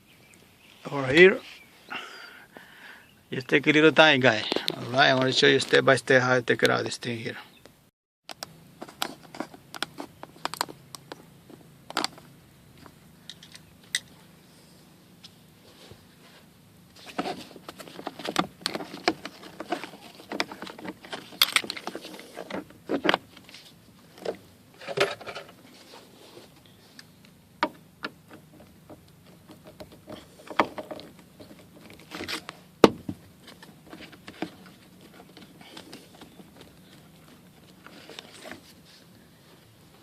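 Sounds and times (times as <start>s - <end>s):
plastic panels clicking and rattling: 27.6s - 38.6s.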